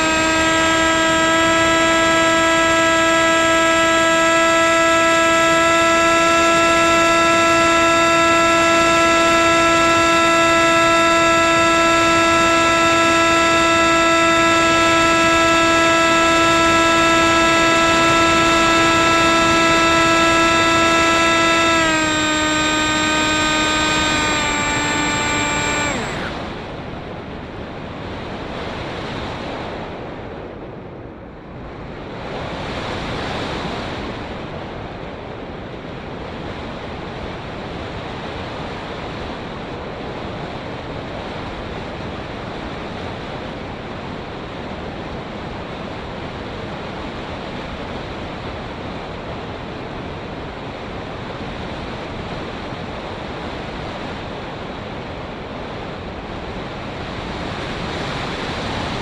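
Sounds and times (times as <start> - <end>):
airflow rushing over microphone: 0.0 - 30.2, 49.6 - 59.0.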